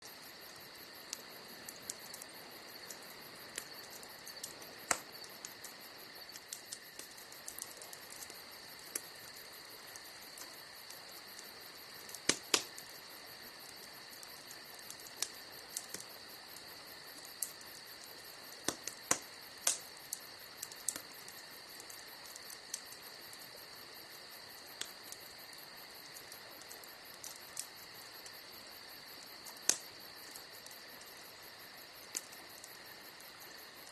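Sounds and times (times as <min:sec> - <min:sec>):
campfire crackling and popping: 0:00.0 - 0:33.9
cricket trill: 0:00.0 - 0:33.9.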